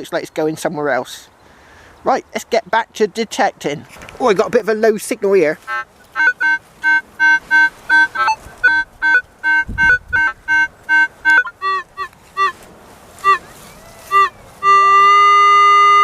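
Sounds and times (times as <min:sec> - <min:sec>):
metal detector beeps: 0:06.2 - 0:12.5.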